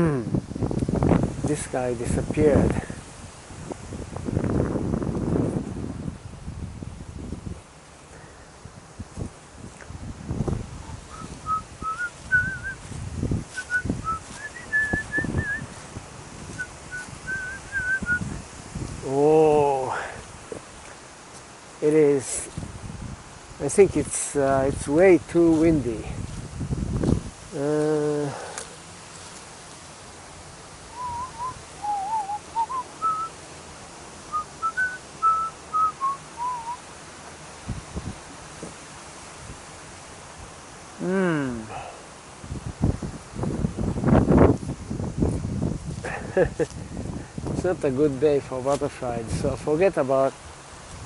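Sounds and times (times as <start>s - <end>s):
strong wind buffeting microphone: 0.0s - 20.8s, 21.9s - 28.4s, 30.5s - 33.3s, 37.6s - 39.7s, 41.3s - 51.0s
steady background hiss: 0.0s - 51.0s
short wavering whistled notes: 11.1s - 12.8s, 31.0s - 33.3s, 34.4s - 36.8s.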